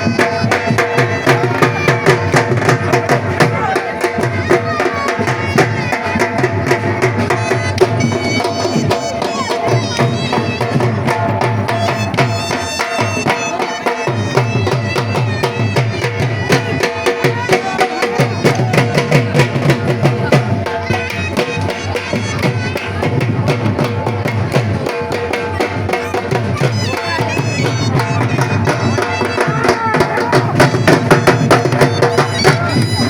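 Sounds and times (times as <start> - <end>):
fast dense drumming: 0.0 - 33.0.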